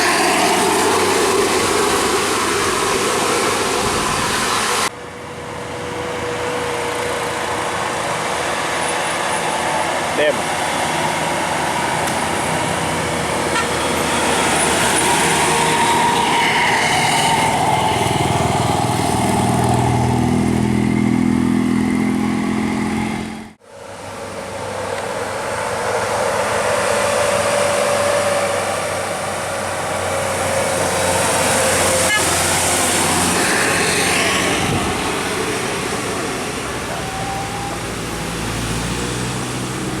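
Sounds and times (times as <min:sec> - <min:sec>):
bus engines running: 0:00.0 - 0:40.0
traffic: 0:00.0 - 0:40.0
bus horn long tones: 0:12.8 - 0:18.1, 0:30.9 - 0:35.4.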